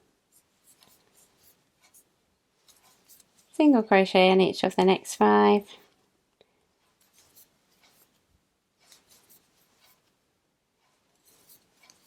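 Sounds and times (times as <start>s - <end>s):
faint rustles of crochet yarn: 0.0s - 6.1s, 6.7s - 10.2s, 10.8s - 12.0s.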